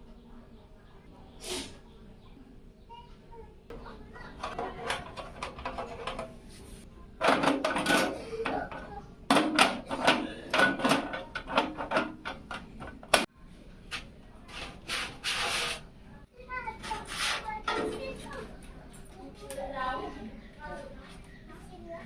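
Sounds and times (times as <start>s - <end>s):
clicks and rattles of hardware: 4.4s - 6.4s, 7.2s - 13.3s.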